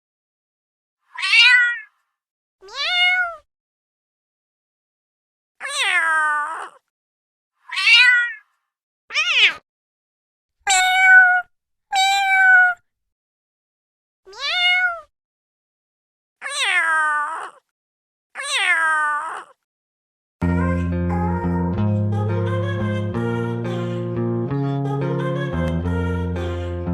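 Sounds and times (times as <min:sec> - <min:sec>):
cat meowing: 0:01.1 - 0:01.9, 0:02.6 - 0:03.5, 0:05.6 - 0:06.8, 0:07.6 - 0:08.5, 0:09.1 - 0:09.6, 0:10.7 - 0:12.8, 0:14.3 - 0:15.1, 0:16.4 - 0:17.6, 0:18.4 - 0:19.6
music: 0:20.4 - 0:26.9.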